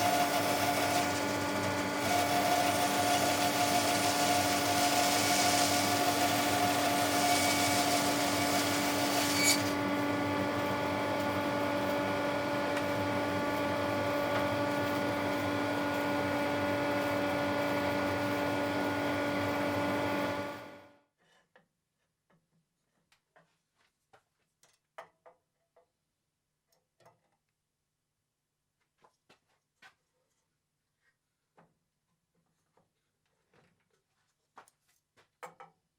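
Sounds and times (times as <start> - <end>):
bandsaw slicing log: 0.0 - 9.9.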